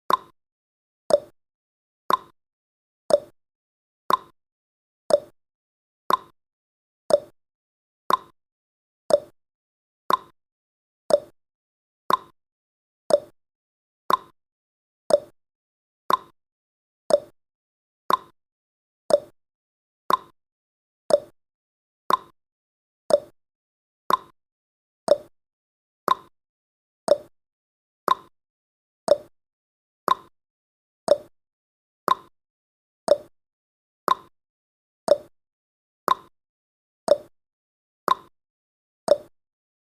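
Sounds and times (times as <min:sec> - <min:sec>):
clock ticking: 0:02.1 - 0:02.3, 0:03.1 - 0:03.3, 0:04.1 - 0:04.3, 0:05.1 - 0:05.3, 0:06.1 - 0:06.3, 0:07.1 - 0:07.3, 0:08.1 - 0:08.3, 0:09.1 - 0:09.3, 0:10.1 - 0:10.3, 0:11.1 - 0:11.3, 0:12.1 - 0:12.3, 0:13.1 - 0:13.3, 0:14.1 - 0:14.3, 0:15.1 - 0:15.3, 0:16.1 - 0:16.3, 0:17.1 - 0:17.3, 0:18.1 - 0:18.3, 0:19.1 - 0:19.3, 0:20.1 - 0:20.3, 0:21.1 - 0:21.3, 0:22.1 - 0:22.3, 0:23.1 - 0:23.3, 0:24.1 - 0:24.3, 0:25.1 - 0:25.3, 0:26.1 - 0:26.3, 0:27.1 - 0:27.3, 0:28.1 - 0:28.3, 0:29.1 - 0:29.3, 0:30.1 - 0:30.3, 0:31.1 - 0:31.3, 0:32.1 - 0:32.3, 0:33.1 - 0:33.3, 0:34.1 - 0:34.3, 0:35.1 - 0:35.3, 0:36.1 - 0:36.3, 0:37.1 - 0:37.3, 0:38.1 - 0:38.3, 0:39.1 - 0:39.3.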